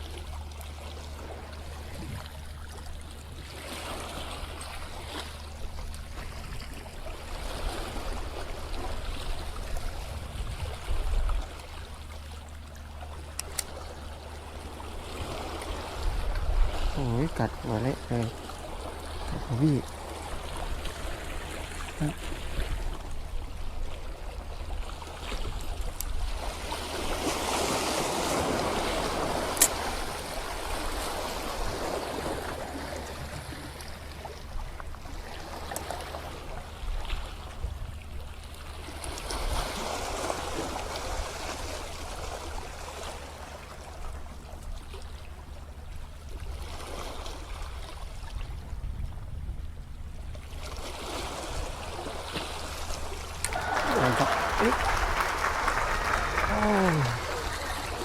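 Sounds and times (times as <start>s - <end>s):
sea water washing over rocks: 25.3s - 34.4s, 50.6s - 58.0s.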